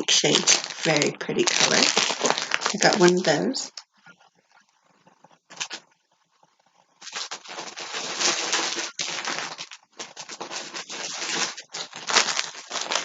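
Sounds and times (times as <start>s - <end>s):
plastic packaging crinkling: 0.0s - 3.8s, 5.5s - 5.8s, 7.0s - 13.0s.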